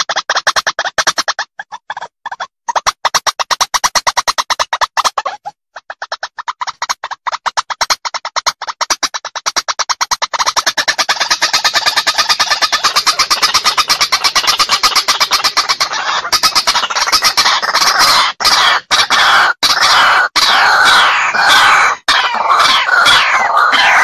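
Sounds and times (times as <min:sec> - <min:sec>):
waterhen clucking calls: 0:00.0 - 0:24.0
waterhen harsh calls: 0:02.7 - 0:24.0.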